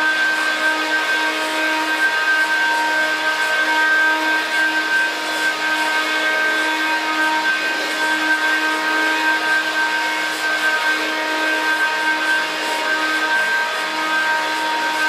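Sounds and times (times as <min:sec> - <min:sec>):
vacuum cleaner running: 0:00.0 - 0:15.0.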